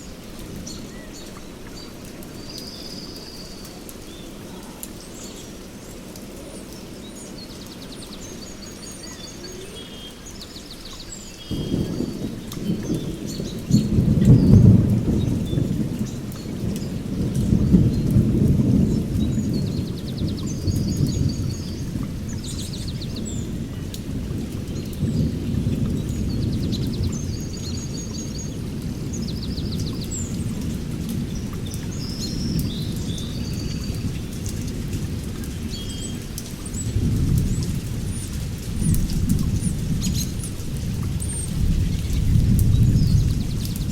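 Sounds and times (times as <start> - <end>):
heavy rain on foliage: 0.0 - 43.9
birds chirping and trilling: 6.6 - 17.0
thunder rumbling: 11.5 - 43.9.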